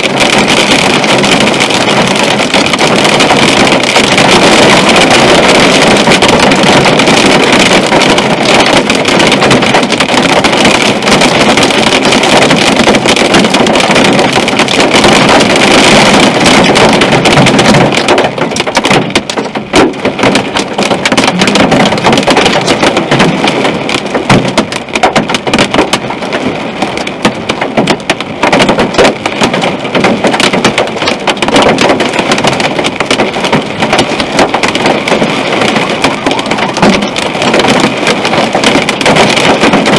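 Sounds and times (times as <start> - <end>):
heavy rain drumming on a car: 0.0 - 39.9
road and wind noise: 0.0 - 39.9.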